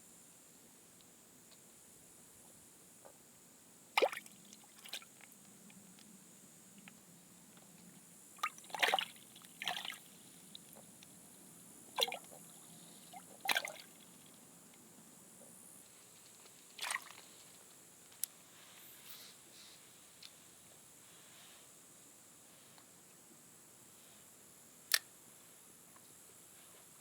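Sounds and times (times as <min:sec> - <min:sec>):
water drips and splashes: 0:08.4 - 0:10.0, 0:13.1 - 0:13.9, 0:16.8 - 0:17.2.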